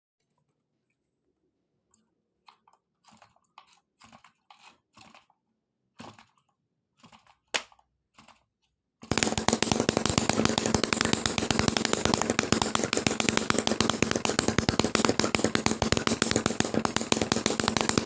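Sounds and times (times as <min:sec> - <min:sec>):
handling clicks and scrapes: 0:09.1 - 0:18.0
small two-stroke engine running: 0:09.1 - 0:18.0.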